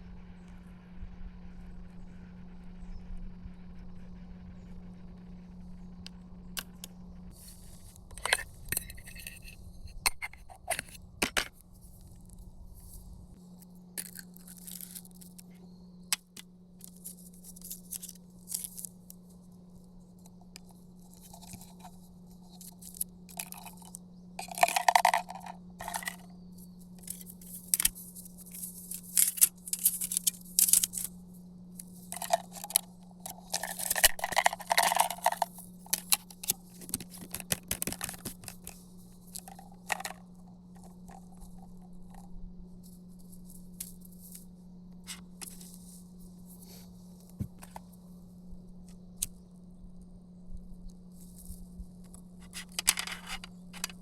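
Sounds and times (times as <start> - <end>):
faint low hum: 0.0 - 54.0
food packaging crinkling: 14.0 - 15.5, 27.0 - 31.1, 31.8 - 42.3.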